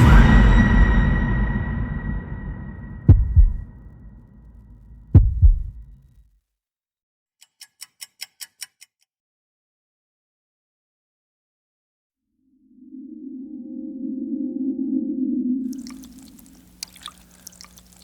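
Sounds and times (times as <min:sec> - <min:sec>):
deep cinematic impact ringing: 0:00.0 - 0:06.0
heartbeat thumps: 0:03.0 - 0:03.8, 0:05.0 - 0:06.0.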